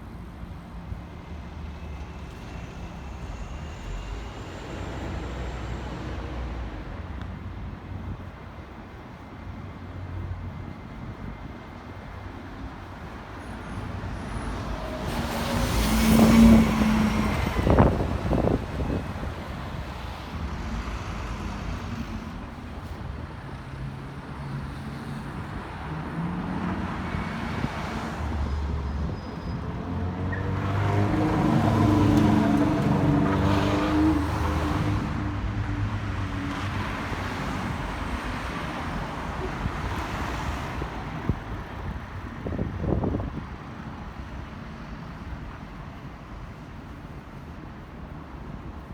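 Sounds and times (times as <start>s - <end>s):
vehicles passing by: 13.8s - 48.9s.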